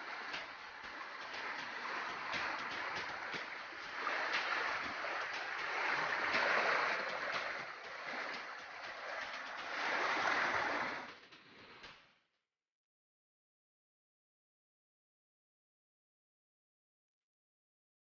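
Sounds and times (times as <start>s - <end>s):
rushing water: 0.0s - 12.0s.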